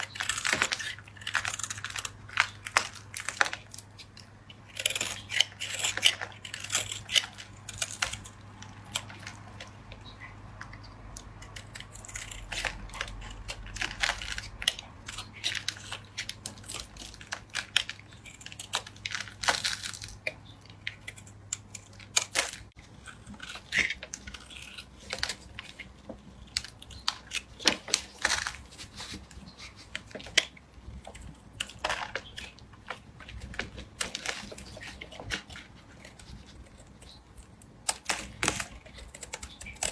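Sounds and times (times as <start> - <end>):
blade scraping dry soap: 0.0 - 10.3, 11.4 - 30.6.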